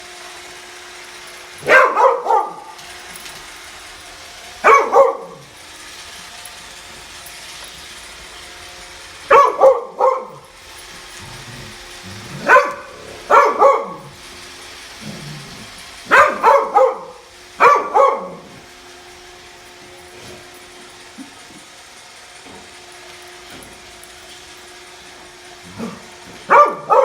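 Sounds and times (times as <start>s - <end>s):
robot vacuum motor hum: 0.0s - 27.0s
dog barking deeply: 1.6s - 2.8s, 4.6s - 5.4s, 9.3s - 10.4s, 11.6s - 14.1s, 15.0s - 18.6s, 25.8s - 27.0s.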